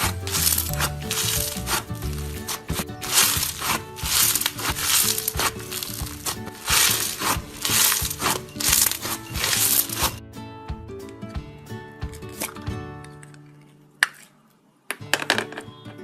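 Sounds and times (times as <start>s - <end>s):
slime crackling crunches: 0.0s - 10.2s
background music: 0.0s - 13.7s, 15.0s - 16.0s.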